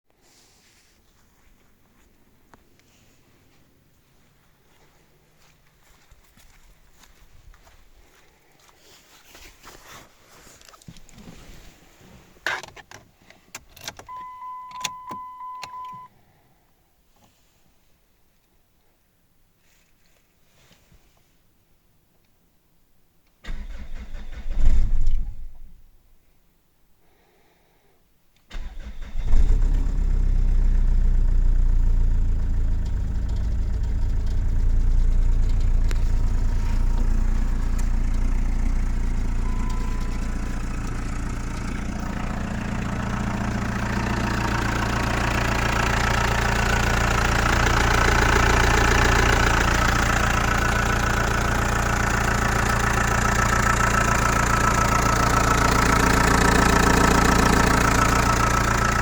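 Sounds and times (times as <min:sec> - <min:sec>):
diesel engine idling: 0:28.5 - 0:59.0.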